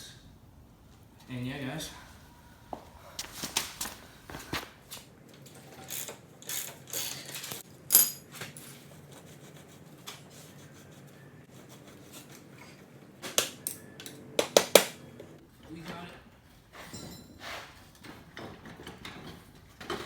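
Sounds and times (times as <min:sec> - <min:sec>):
metal tools clanking: 0:05.4 - 0:08.6, 0:16.8 - 0:20.0
ratchet wrench clicking: 0:05.9 - 0:08.2.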